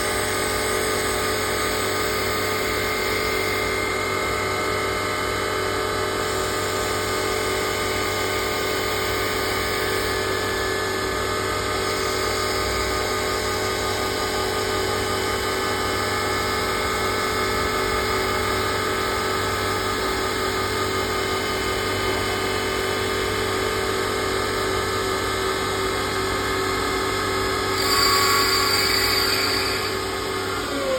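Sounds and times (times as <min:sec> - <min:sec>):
lathe machine hum: 0:00.2 - 0:30.9
tool cutting wood: 0:27.7 - 0:30.9.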